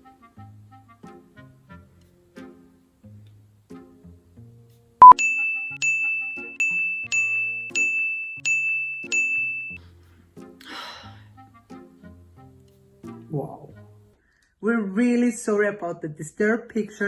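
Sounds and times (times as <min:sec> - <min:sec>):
soft background music: 0:00.0 - 0:14.2
high bell-like ding: 0:05.0 - 0:09.8.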